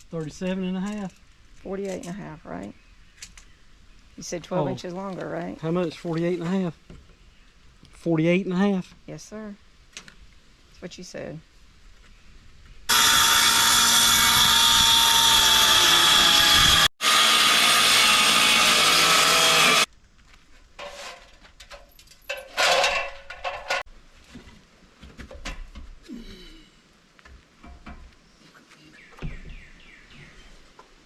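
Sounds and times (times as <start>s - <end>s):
power saw cutting plywood: 12.9s - 19.9s
board knocking and rustling: 22.6s - 26.0s.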